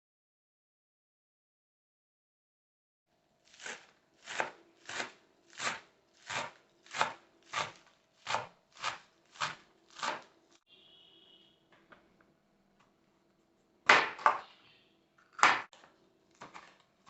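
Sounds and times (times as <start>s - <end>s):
knife chopping vegetables: 3.4s - 10.6s, 13.8s - 14.4s, 15.3s - 17.0s.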